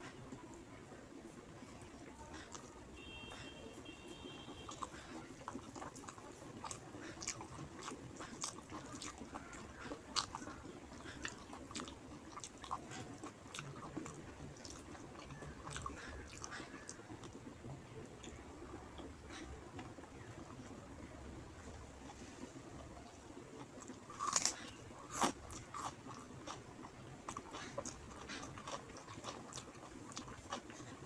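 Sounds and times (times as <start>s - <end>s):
close-up chewing and biting: 1.2s - 31.0s
faint steady beep: 2.9s - 4.9s.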